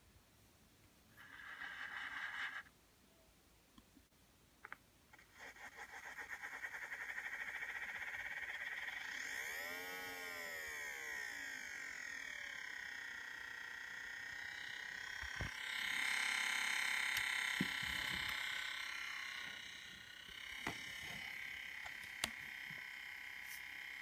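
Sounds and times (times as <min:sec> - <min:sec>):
laptop high-pitched whine: 0:05.1 - 0:24.0.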